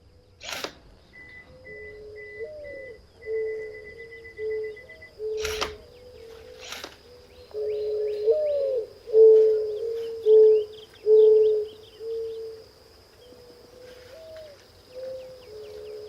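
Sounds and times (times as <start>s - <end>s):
small birds chirping: 0.0s - 16.0s
mourning dove cooing: 1.1s - 16.0s.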